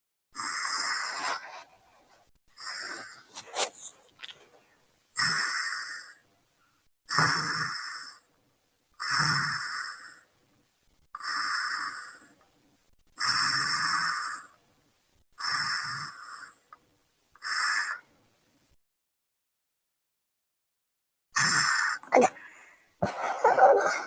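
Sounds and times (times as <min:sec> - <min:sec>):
person snoring: 0:00.4 - 0:01.7, 0:02.5 - 0:03.8, 0:05.2 - 0:06.2, 0:07.1 - 0:08.3, 0:09.0 - 0:10.3, 0:11.2 - 0:12.4, 0:13.2 - 0:14.5, 0:15.4 - 0:16.6, 0:21.4 - 0:24.0.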